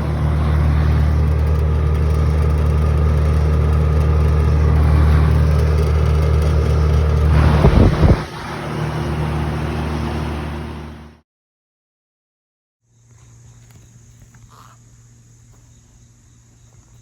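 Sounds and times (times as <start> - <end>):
air conditioner compressor hum: 0.0 - 11.2
condenser fan noise: 0.0 - 11.2
loud low rumble: 0.0 - 11.2.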